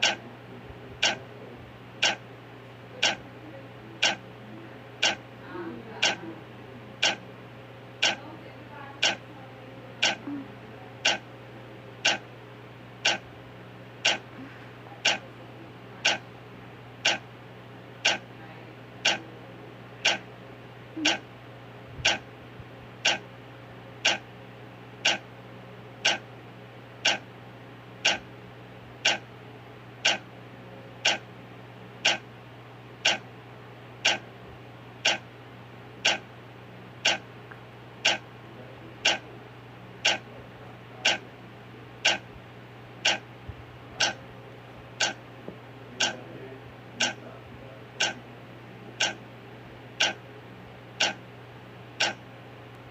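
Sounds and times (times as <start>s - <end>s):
clock ticking: 0.0s - 0.2s, 1.0s - 1.2s, 2.0s - 2.2s, 3.0s - 3.2s, 4.0s - 4.2s, 5.0s - 5.2s, 6.0s - 6.2s, 7.0s - 7.2s, 8.0s - 8.2s, 9.0s - 9.2s, 10.0s - 10.2s, 11.0s - 11.2s, 12.0s - 12.2s, 13.0s - 13.2s, 14.0s - 14.2s, 15.0s - 15.2s, 16.0s - 16.2s, 17.0s - 17.2s, 18.0s - 18.2s, 19.0s - 19.2s, 20.0s - 20.2s, 21.0s - 21.2s, 22.0s - 22.2s, 23.0s - 23.2s, 24.0s - 24.2s, 25.0s - 25.2s, 26.0s - 26.2s, 27.0s - 27.2s, 28.0s - 28.2s, 29.0s - 29.2s, 30.0s - 30.2s, 31.0s - 31.2s, 32.0s - 32.2s, 33.0s - 33.2s, 34.0s - 34.2s, 35.0s - 35.2s, 36.0s - 36.2s, 37.0s - 37.2s, 38.0s - 38.2s, 39.0s - 39.2s, 40.0s - 40.3s, 41.0s - 41.2s, 42.0s - 42.2s, 43.0s - 43.2s, 45.0s - 45.2s, 46.0s - 46.2s, 47.0s - 47.2s, 49.0s - 49.2s, 50.0s - 50.2s, 51.0s - 51.2s, 52.0s - 52.2s.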